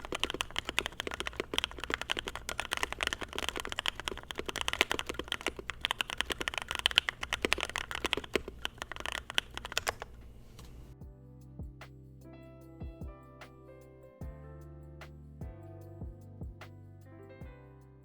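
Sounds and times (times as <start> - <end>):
typing on mechanical keyboard: 0.0 - 10.2.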